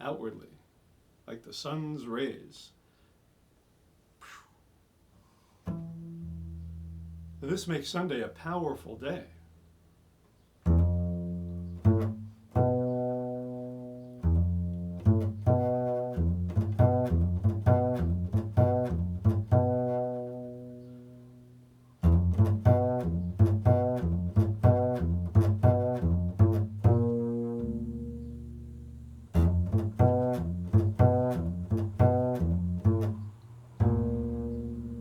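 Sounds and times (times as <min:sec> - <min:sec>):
low plucked string instrument: 0:05.7 - 0:07.8, 0:10.6 - 0:35.0.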